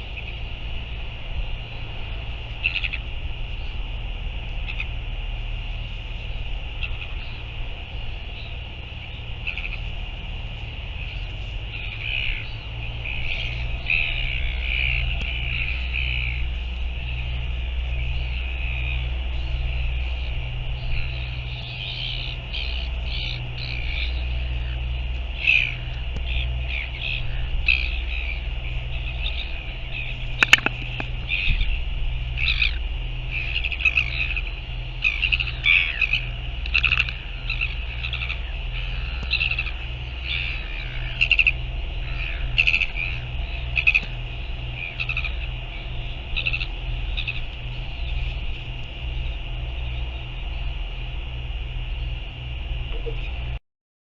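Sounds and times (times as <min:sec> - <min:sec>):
gulls calling: 0:00.0 - 0:53.6
wind rumble on microphone: 0:00.0 - 0:53.6
sharp click: 0:30.4 - 0:31.1.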